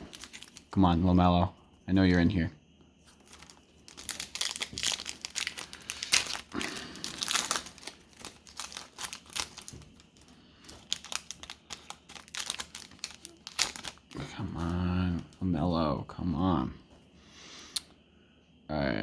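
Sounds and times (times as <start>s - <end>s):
plastic wrapper tearing and crinkling: 0.0s - 0.8s, 3.1s - 14.7s.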